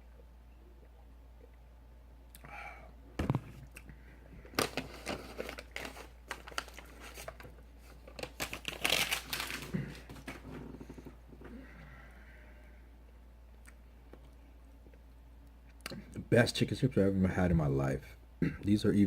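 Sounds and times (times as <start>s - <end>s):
paper packaging crinkling: 4.4s - 10.6s.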